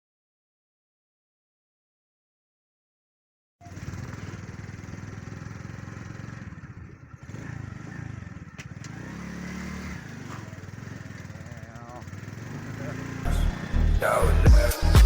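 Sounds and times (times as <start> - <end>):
outboard boat motor running: 3.6 - 14.6.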